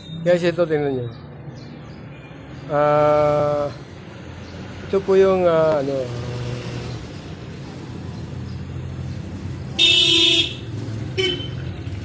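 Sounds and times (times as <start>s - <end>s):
vehicle horn honking: 9.8s - 11.6s.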